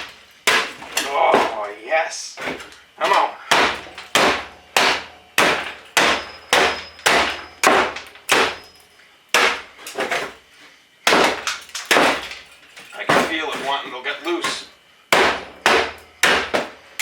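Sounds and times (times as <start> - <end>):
hammer striking computer case: 0.5 - 1.6, 3.0 - 8.7, 9.3 - 9.7, 11.1 - 12.2, 14.5 - 16.8.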